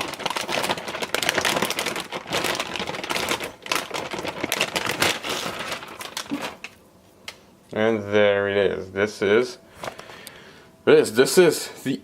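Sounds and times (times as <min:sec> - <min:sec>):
plastic wrapping crinkling: 0:00.0 - 0:07.6.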